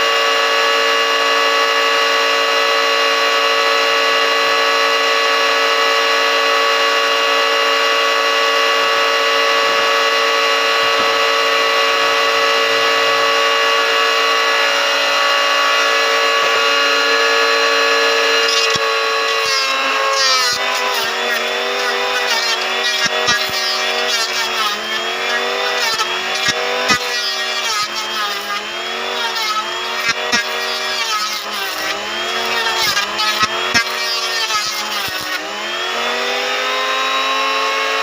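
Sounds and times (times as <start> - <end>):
wood jointer motor whining: 0.0 - 38.0.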